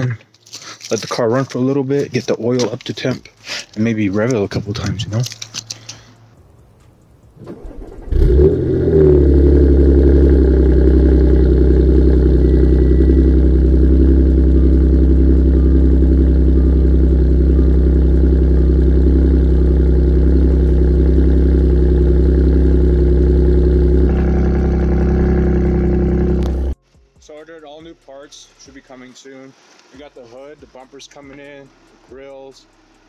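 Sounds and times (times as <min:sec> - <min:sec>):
starter motor cranking: 0:07.4 - 0:09.1
car engine fast idle: 0:07.4 - 0:22.6, 0:23.9 - 0:26.8.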